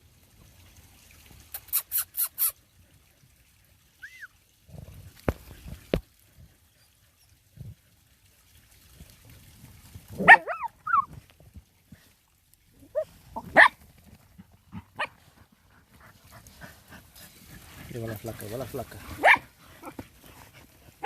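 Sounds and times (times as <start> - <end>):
dog yelping: 10.2 - 11.1, 12.9 - 13.8, 19.2 - 19.9.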